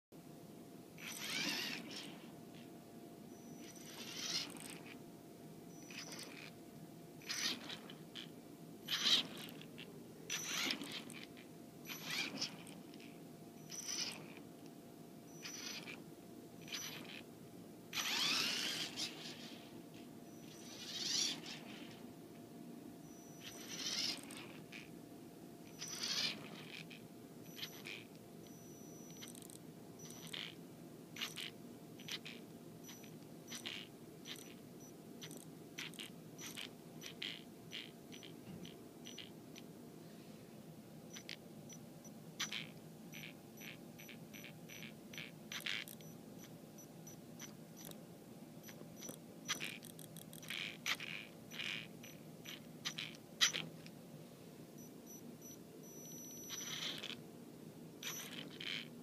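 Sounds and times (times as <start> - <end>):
faint motor hum: 0.2 - 59.0
rc motor metallic clicks: 1.0 - 2.1, 3.4 - 5.0, 5.7 - 6.5, 7.2 - 8.3, 8.9 - 14.4, 15.3 - 16.0, 16.6 - 17.2, 17.9 - 19.5, 20.3 - 21.8, 23.1 - 24.9, 25.7 - 30.6, 31.2 - 34.6, 35.2 - 39.7, 42.4 - 46.5, 48.6 - 53.9, 58.0 - 58.9.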